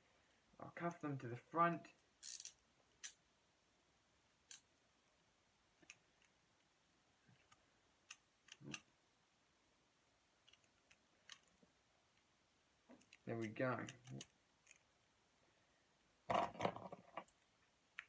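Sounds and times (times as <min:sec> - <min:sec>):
handcuff ratchet clicks: 0:02.2 - 0:03.2.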